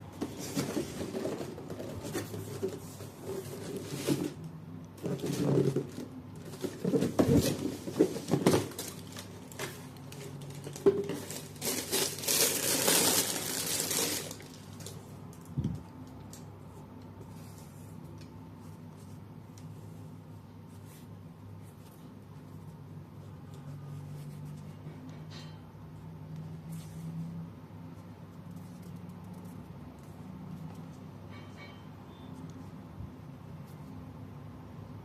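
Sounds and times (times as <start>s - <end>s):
box knocks and rustles: 5.0s - 8.9s
paper crinkling: 5.6s - 15.5s.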